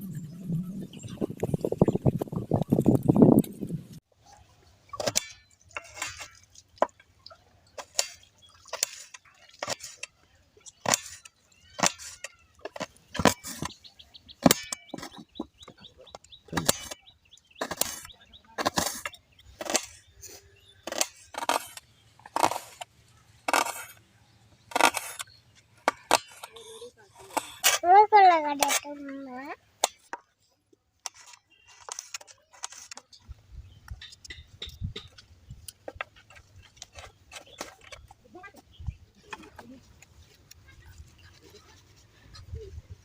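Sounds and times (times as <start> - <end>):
intestines being handled and cut: 7.7 - 13.8, 14.4 - 24.0, 24.6 - 27.8, 29.8 - 33.2.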